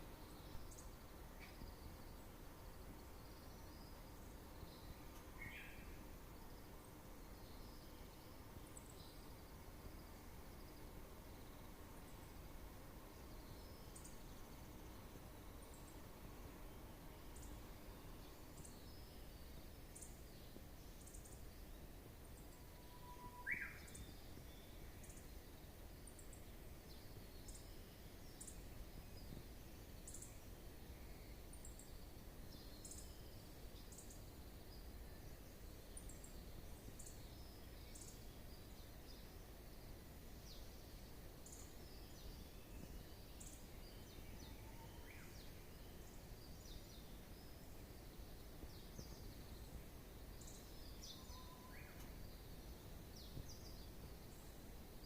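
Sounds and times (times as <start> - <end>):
rising bird call: 22.8 - 23.8.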